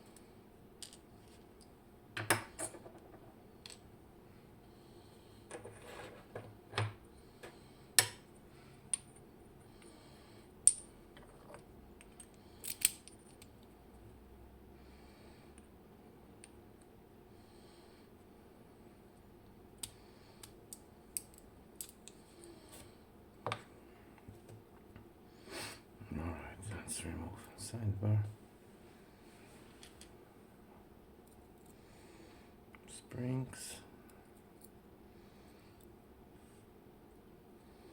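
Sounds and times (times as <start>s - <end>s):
metal lock parts clicking: 10.7s - 13.5s.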